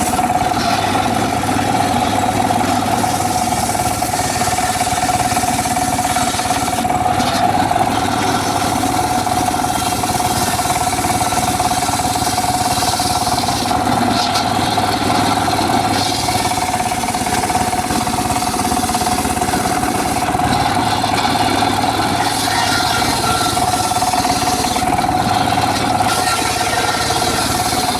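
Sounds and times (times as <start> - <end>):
motor humming: 0.0 - 27.9
saw blade whining: 0.0 - 27.9.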